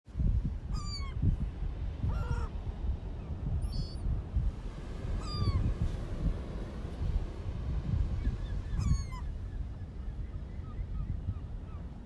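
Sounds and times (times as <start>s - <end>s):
steady low rumble: 0.1s - 10.2s.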